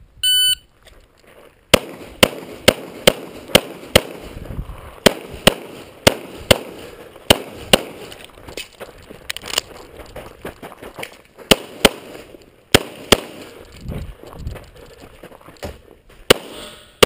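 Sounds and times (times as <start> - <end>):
pistol shots: 1.7 - 4.3, 5.0 - 8.1, 11.5 - 13.5, 16.3 - 16.7.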